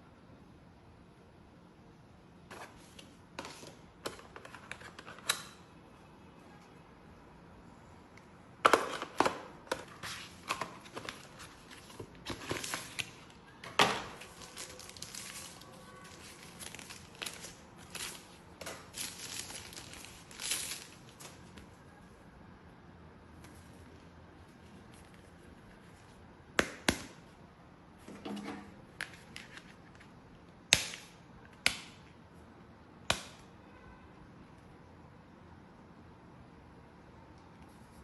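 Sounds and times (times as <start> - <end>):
packaging being handled: 8.6 - 21.7.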